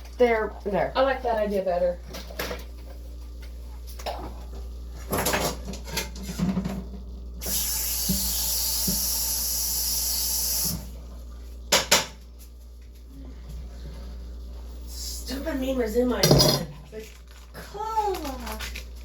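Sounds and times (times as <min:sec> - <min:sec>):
kitchen handling sounds: 0:05.0 - 0:07.0, 0:16.2 - 0:17.0.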